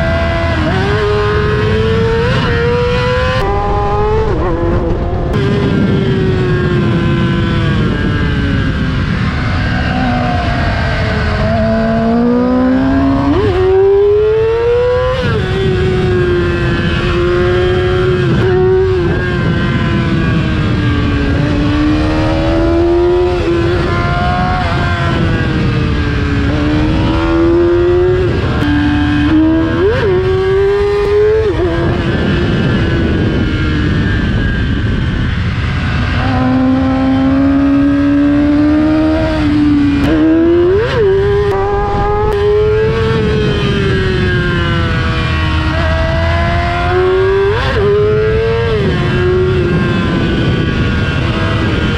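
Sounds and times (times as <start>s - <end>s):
motorcycle engine revving: 0.0s - 51.9s
low rush of noise: 3.2s - 9.4s, 38.7s - 46.7s.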